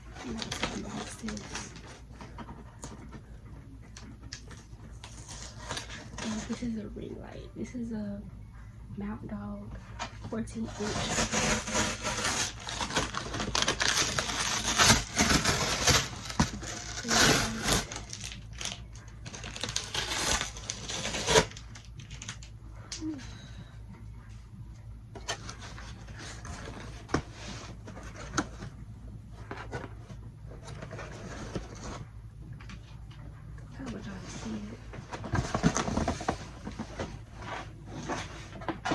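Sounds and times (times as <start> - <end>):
packaging crinkling and tearing: 10.7 - 22.6.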